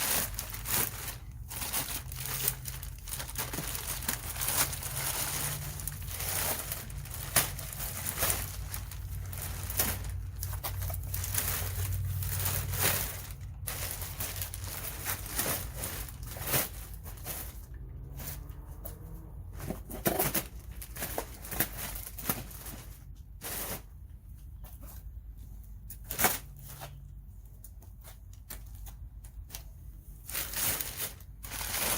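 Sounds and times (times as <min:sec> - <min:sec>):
packaging wrap crinkling and tearing: 0:00.0 - 0:17.5.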